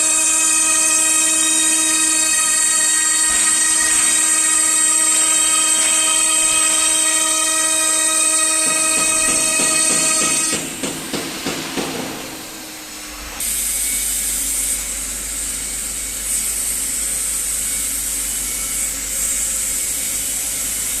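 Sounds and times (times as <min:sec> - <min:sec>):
router spindle whine: 0:00.0 - 0:10.6.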